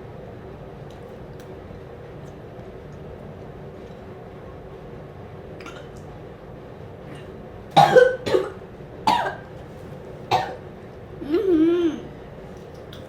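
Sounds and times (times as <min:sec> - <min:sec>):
child coughing hard: 0:07.8 - 0:09.5, 0:10.3 - 0:10.6.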